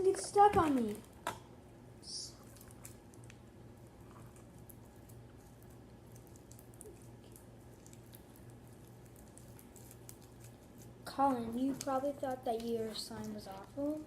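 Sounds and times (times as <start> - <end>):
low steady hum: 0.0 - 14.0
slime squishing: 2.0 - 14.0.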